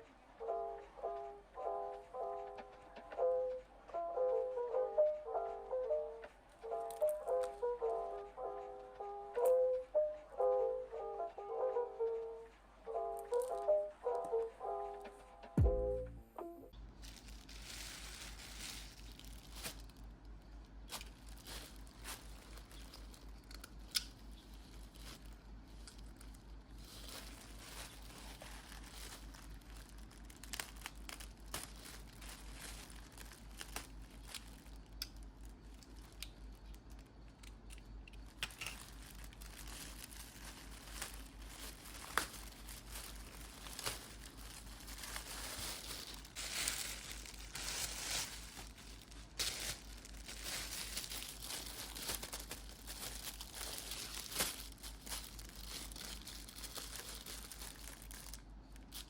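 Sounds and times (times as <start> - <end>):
packaging crinkling and tearing: 6.8 - 7.6, 13.2 - 13.7, 16.9 - 59.0.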